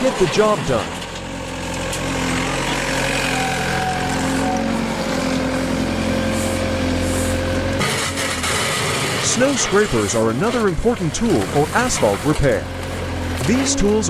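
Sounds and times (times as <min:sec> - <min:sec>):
construction machine engine running: 0:00.0 - 0:14.0.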